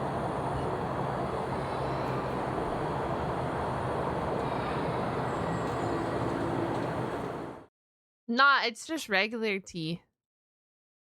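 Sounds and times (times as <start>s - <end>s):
street vehicle rumble: 0.0s - 7.7s.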